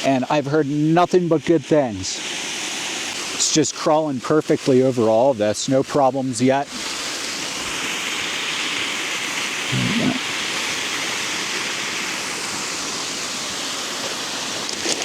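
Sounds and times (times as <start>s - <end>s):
waterfall rushing: 6.6s - 15.0s.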